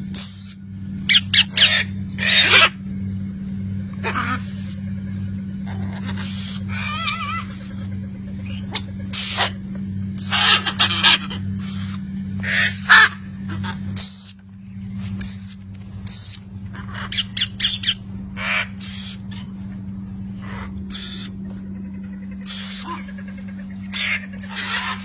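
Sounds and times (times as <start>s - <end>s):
steady low hum: 0.0s - 25.0s
parrots squawking: 0.2s - 2.8s, 4.0s - 4.8s, 5.6s - 9.6s, 10.2s - 14.4s, 15.2s - 25.0s.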